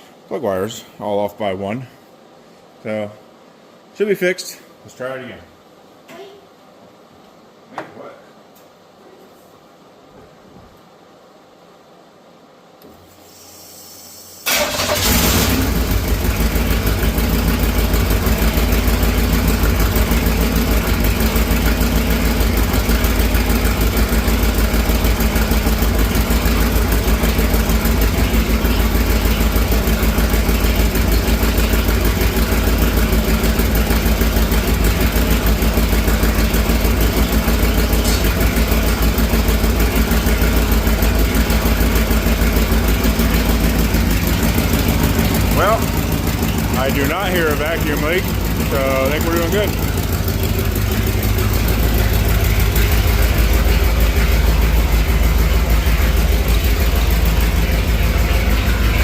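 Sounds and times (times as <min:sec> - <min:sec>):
car engine idling: 0:14.5 - 0:59.0.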